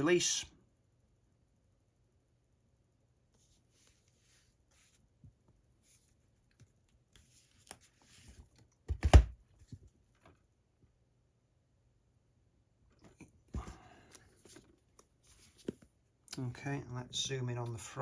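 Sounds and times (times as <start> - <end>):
light rustles of handling box: 13.0 - 15.9.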